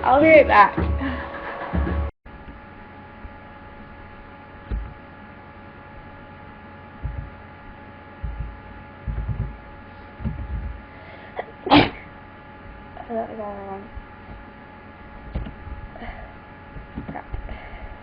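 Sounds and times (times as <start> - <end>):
steady hum of fixed tones: 0.0 - 18.0
dull low thumps: 2.3 - 6.3, 6.9 - 11.0, 13.9 - 18.0.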